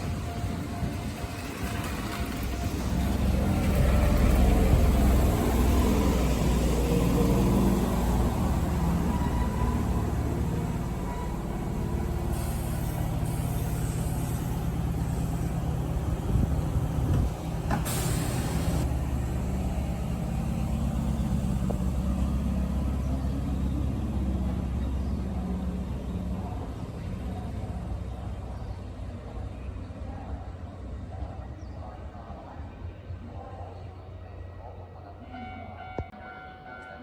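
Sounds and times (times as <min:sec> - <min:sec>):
train motors and wheels rumbling: 0:00.0 - 0:37.0
air brakes hissing: 0:12.2 - 0:15.5, 0:17.7 - 0:18.9.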